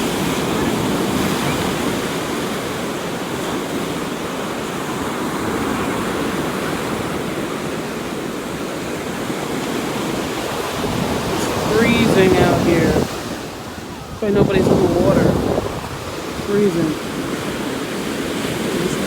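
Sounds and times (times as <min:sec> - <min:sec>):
ocean surf rushing: 0:00.0 - 0:19.0
wind on microphone: 0:09.6 - 0:19.0.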